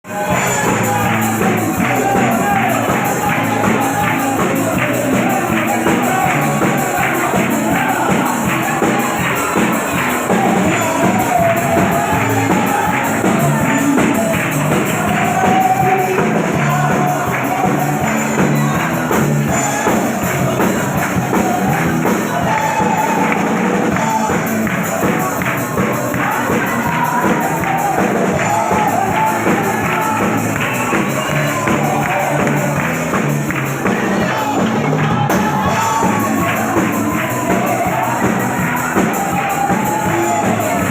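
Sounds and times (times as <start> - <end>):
voices singing a hymn: 0.1 - 40.9.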